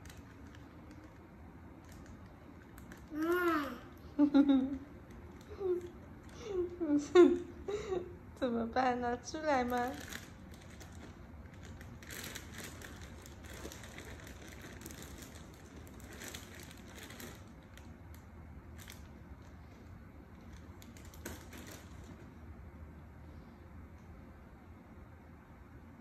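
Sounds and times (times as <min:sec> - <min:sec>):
rustling and crinkling: 0:00.0 - 0:03.8, 0:09.4 - 0:22.5.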